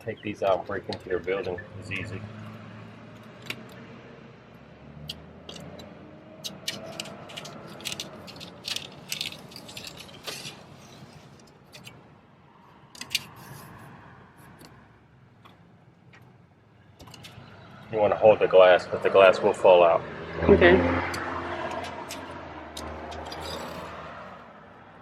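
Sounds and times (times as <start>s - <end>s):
metal scraper clicking and rattling: 6.4s - 10.7s, 21.7s - 24.0s.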